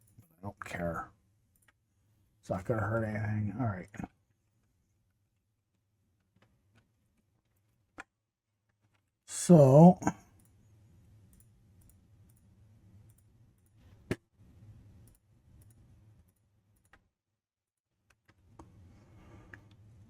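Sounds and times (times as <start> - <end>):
computer mouse and keyboard clicks: 15.0 - 17.1.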